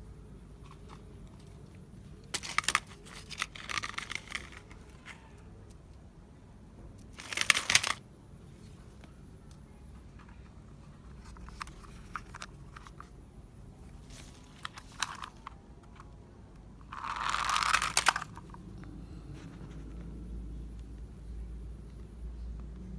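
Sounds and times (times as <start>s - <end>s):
toy vehicles clicking and knocking: 2.2s - 5.4s, 7.0s - 8.0s, 14.1s - 16.1s, 16.9s - 18.6s.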